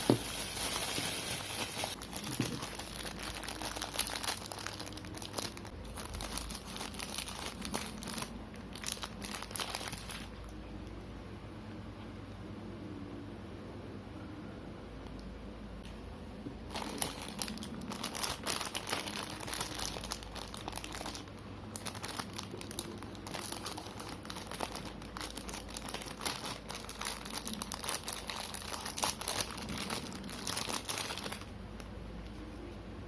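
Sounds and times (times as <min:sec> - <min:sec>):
plastic packaging crinkling: 0:00.0 - 0:10.5, 0:16.6 - 0:31.9.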